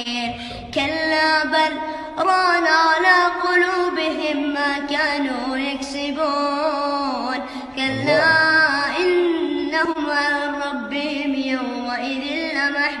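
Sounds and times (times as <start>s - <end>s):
person reciting melodically: 7.7s - 10.0s.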